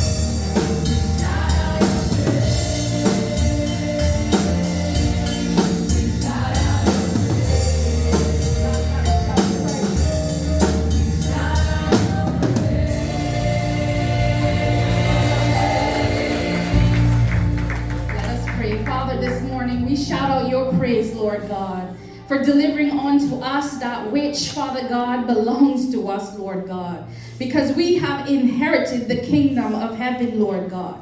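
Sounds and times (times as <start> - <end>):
drum kit beat: 0.0 - 19.0
gospel band playing: 0.0 - 25.6.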